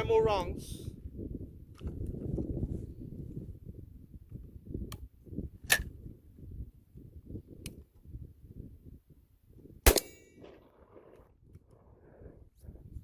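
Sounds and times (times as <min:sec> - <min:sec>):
shotgun firing: 0:09.8 - 0:11.2.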